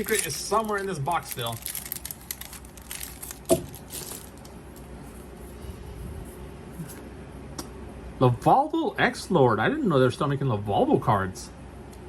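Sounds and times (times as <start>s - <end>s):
cards rustling and clicking: 0.0s - 4.6s
low steady hum: 0.0s - 12.0s.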